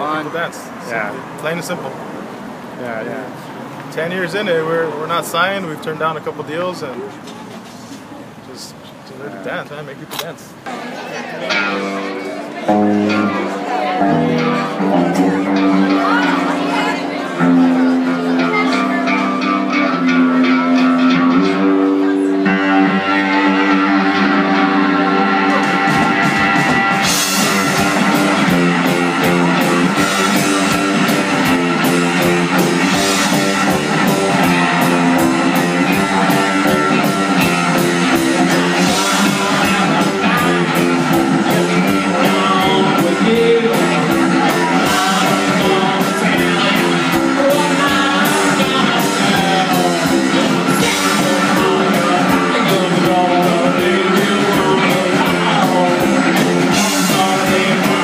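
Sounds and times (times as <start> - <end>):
electric guitar: 10.6 - 58.0
drum kit playing: 11.5 - 58.0
person singing: 26.8 - 58.0.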